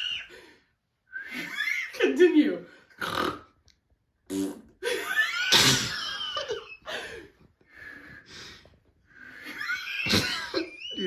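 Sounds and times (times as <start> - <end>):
person blowing a raspberry: 3.0 - 3.5, 4.3 - 4.8.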